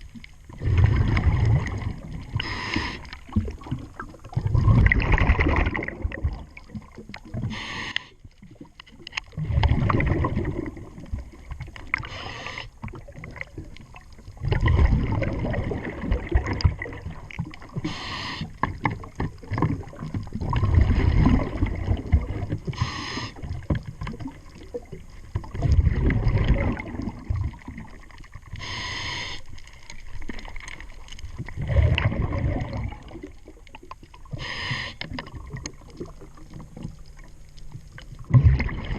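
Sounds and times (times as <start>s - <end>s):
exhaled bubbles rumbling: 0.0s - 38.9s
scuba regulator inhale hiss: 2.4s - 3.2s, 7.5s - 8.2s, 12.0s - 12.8s, 17.8s - 18.6s, 22.7s - 23.5s, 28.6s - 29.6s, 34.3s - 35.1s.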